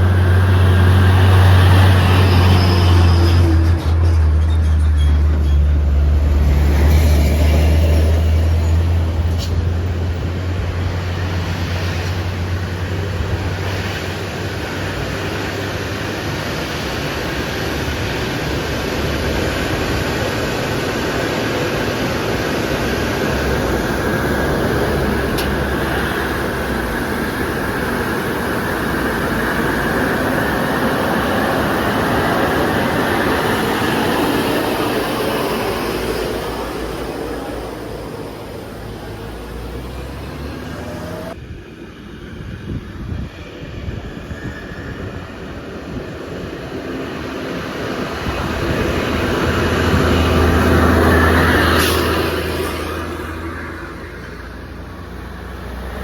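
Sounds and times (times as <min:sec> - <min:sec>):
road noise: 0:00.0 - 0:56.0
truck engine running hard: 0:00.0 - 0:56.0
low drone: 0:05.6 - 0:56.0.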